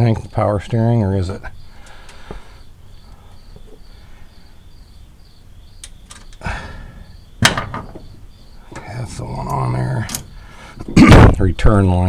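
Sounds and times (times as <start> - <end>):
faint steady hum: 0.0 - 12.0
tools knocking and clinking: 7.4 - 11.0.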